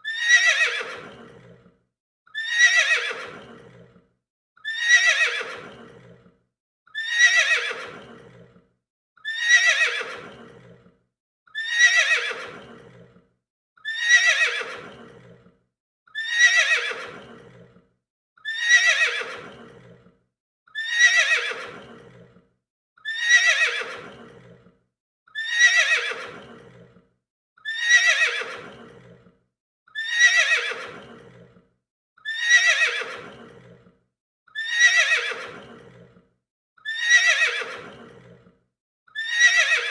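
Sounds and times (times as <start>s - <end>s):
horse whinnying: 0.0s - 1.6s, 2.4s - 3.9s, 4.6s - 6.2s, 7.0s - 8.5s, 9.2s - 10.8s, 11.6s - 13.1s, 13.8s - 15.4s, 16.2s - 17.7s, 18.4s - 20.0s, 20.8s - 22.3s, 23.0s - 24.6s, 25.4s - 26.9s, 27.6s - 29.2s, 30.0s - 31.5s, 32.2s - 33.8s, 34.6s - 36.1s, 36.8s - 38.5s, 39.2s - 39.9s.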